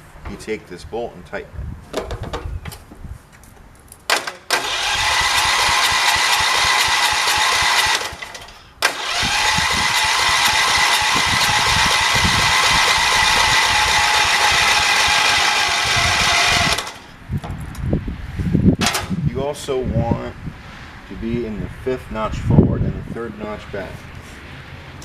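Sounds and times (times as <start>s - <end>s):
electric starter cranking engine: 4.5s - 17.1s.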